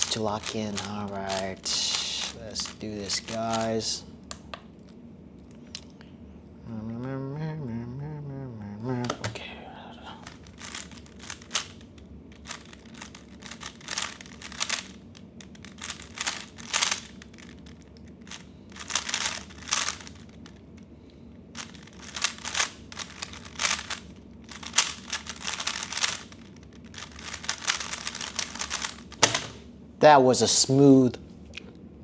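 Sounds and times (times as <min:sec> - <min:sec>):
speed cube clicking turns: 0:00.0 - 0:04.6, 0:10.2 - 0:20.9, 0:21.5 - 0:29.5.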